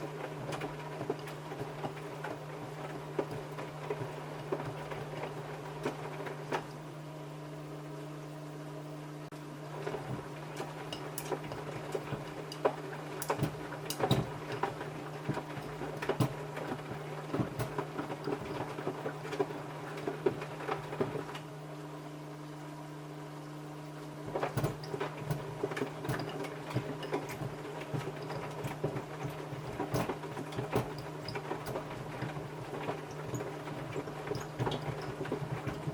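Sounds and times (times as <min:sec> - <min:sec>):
washing machine motor hum: 0:00.0 - 0:35.9
shoes knocking in drum: 0:11.4 - 0:21.2, 0:24.3 - 0:35.9.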